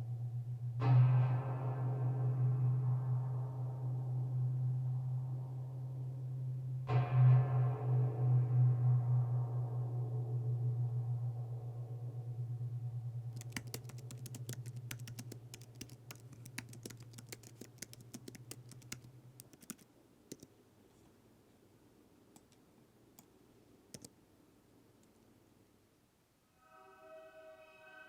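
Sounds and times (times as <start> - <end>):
gong-like hum: 0.0 - 13.4
typewriter keys clacking: 13.4 - 20.4.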